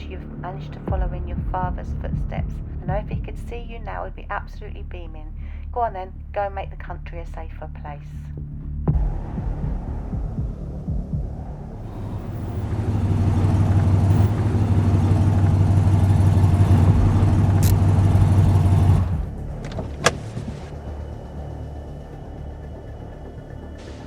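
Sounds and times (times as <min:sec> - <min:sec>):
car engine running: 0:08.9 - 0:24.0
sharp clicks: 0:16.8 - 0:19.0.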